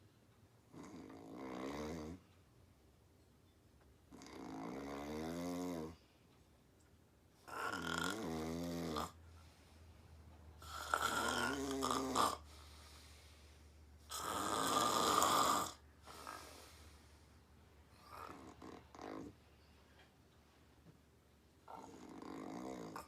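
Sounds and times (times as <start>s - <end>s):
quiet breaths: 0.0s - 23.0s
woman snoring: 0.7s - 2.2s, 4.1s - 6.0s, 7.5s - 9.2s, 10.6s - 12.5s, 14.1s - 16.6s, 21.7s - 23.0s.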